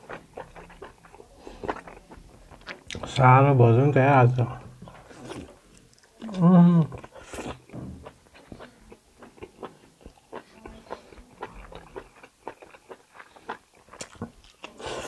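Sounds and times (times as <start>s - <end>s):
chewing and biting meat: 0.0s - 3.1s, 7.0s - 15.0s.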